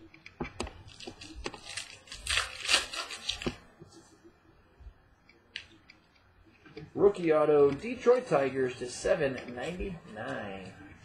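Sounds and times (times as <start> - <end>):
packaging crinkling: 0.8 - 3.6.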